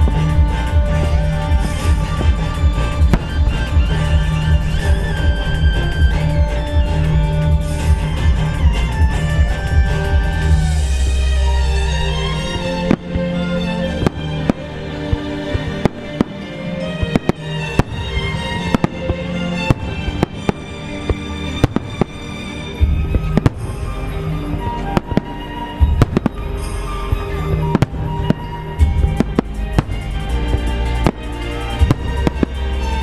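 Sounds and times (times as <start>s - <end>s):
deep firework booms: 0.0s - 11.1s, 19.7s - 31.2s
fireworks cracking: 0.0s - 33.0s
music: 0.0s - 33.0s.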